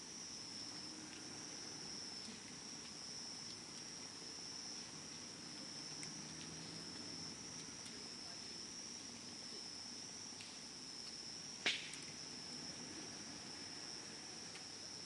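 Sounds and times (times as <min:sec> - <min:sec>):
campfire crackling and popping: 0:01.9 - 0:09.2, 0:10.2 - 0:12.3.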